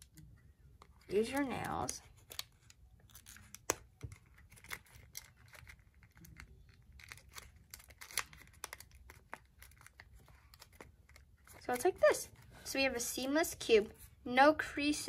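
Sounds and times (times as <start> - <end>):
paper rustling and crackling: 1.1 - 12.6.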